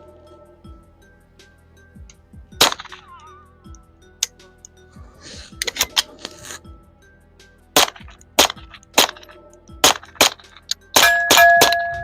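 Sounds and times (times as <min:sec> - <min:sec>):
suppressed pistol shots: 0:02.6 - 0:03.0, 0:07.8 - 0:11.8.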